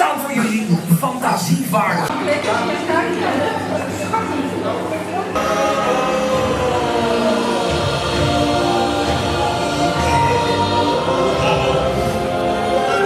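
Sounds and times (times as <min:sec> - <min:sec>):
choir singing held notes: 0:05.2 - 0:13.0.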